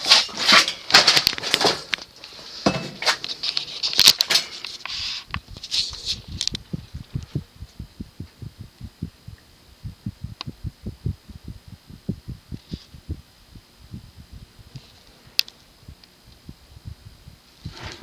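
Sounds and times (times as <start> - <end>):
ceiling fan throbbing: 0.0 - 18.0
rustling air gusts: 5.3 - 18.0.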